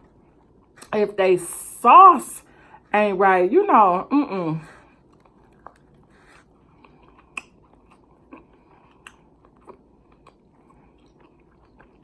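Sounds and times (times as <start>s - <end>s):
person chewing food: 0.0s - 0.9s, 4.7s - 12.0s.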